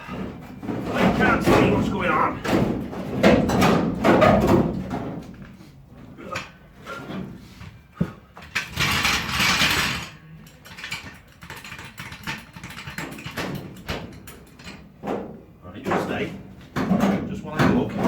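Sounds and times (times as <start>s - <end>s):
metal clanks and rattles: 0.0s - 5.5s, 8.4s - 18.0s.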